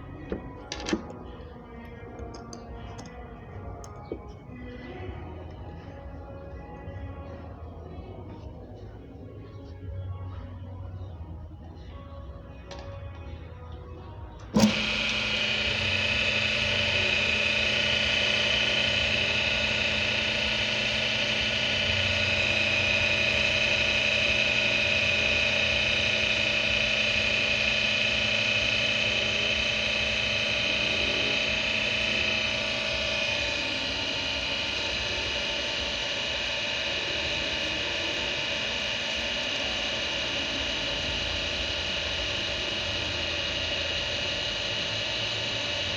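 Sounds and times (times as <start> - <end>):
electric motor humming and whining: 0.0 - 45.9
switch click: 14.4 - 15.2.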